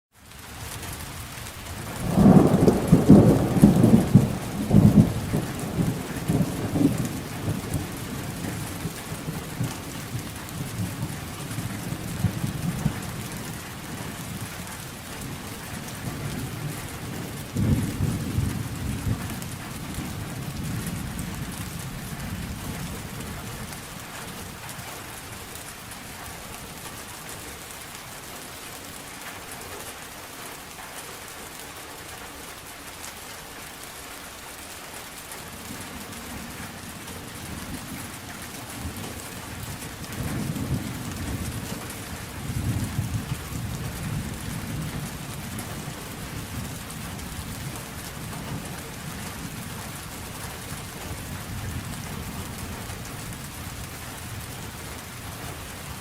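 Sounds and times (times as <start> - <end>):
steady rain: 0.1 - 56.0
rolling thunder: 1.8 - 23.8, 35.6 - 53.6.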